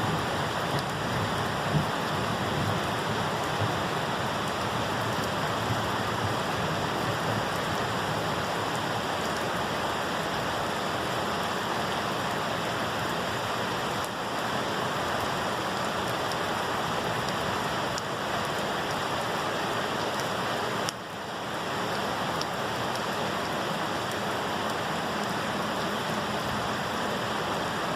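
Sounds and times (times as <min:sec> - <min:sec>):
steady rain falling: 0:00.0 - 0:27.9
raindrops ticking: 0:00.1 - 0:06.3.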